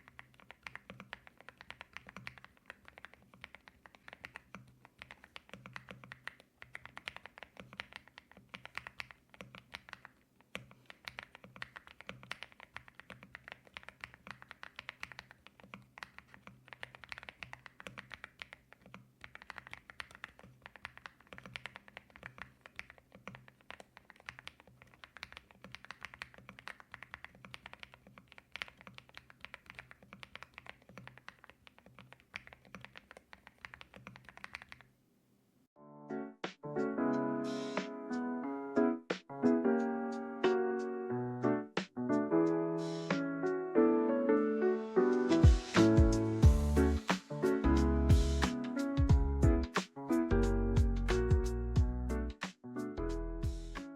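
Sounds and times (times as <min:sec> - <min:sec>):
fast typing on mechanical keyboard: 0:00.0 - 0:34.9.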